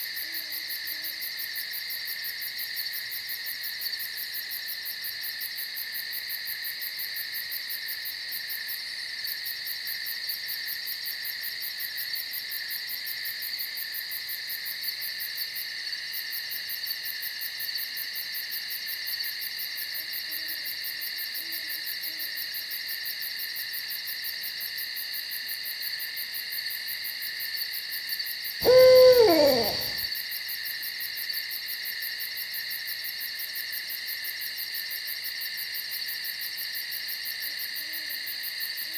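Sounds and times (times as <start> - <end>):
night insects chorus: 28.6 - 30.0
owl hooting: 28.6 - 30.0.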